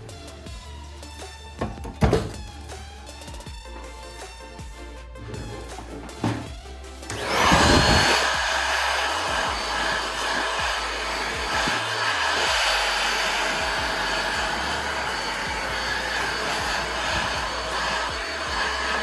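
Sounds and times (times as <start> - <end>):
power tool motor whining: 7.1 - 19.0.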